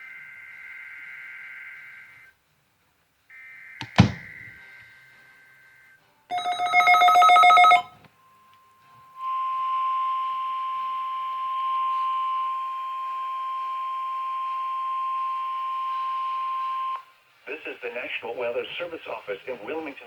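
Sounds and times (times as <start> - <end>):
continuous high alarm tone: 6.3 - 8.5
static hiss: 17.1 - 20.0.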